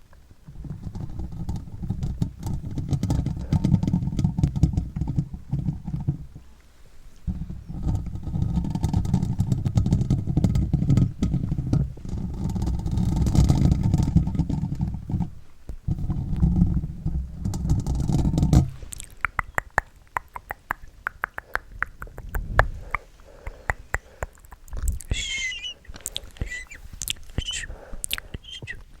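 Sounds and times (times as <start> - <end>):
wet mouth and tongue clicks: 18.9 - 28.9.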